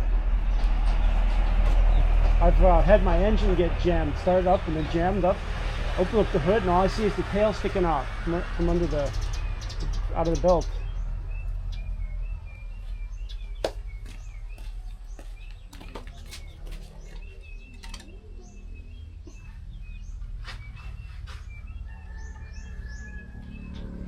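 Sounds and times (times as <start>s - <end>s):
small birds chirping: 6.0s - 24.0s.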